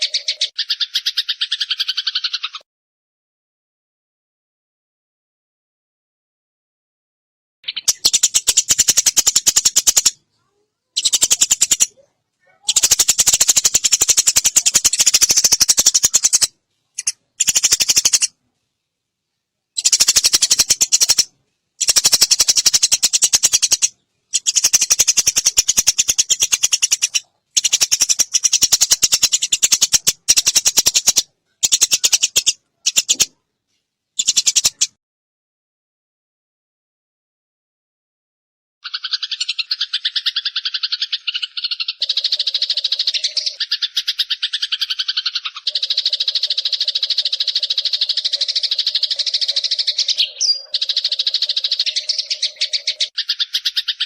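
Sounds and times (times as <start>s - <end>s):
sparrow chattering rattle: 0.0s - 2.6s, 7.6s - 10.2s, 11.0s - 18.4s, 19.8s - 33.4s, 34.2s - 35.0s, 38.8s - 54.0s.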